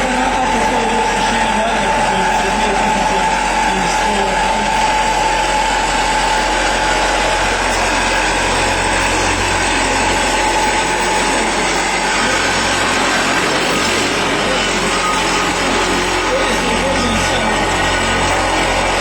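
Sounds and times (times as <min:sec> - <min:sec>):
compactor whine: 0:00.0 - 0:19.0
diesel engine running: 0:00.0 - 0:19.0.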